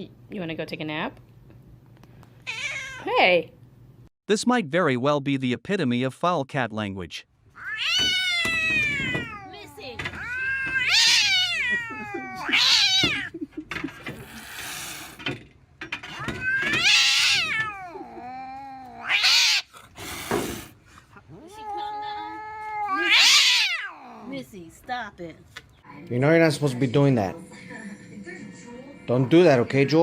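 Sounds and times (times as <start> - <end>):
cat yowling angrily: 2.5 - 3.1, 7.5 - 13.3, 16.1 - 20.6, 21.3 - 24.5
cat hissing: 7.6 - 13.3, 14.0 - 15.3, 16.1 - 24.5.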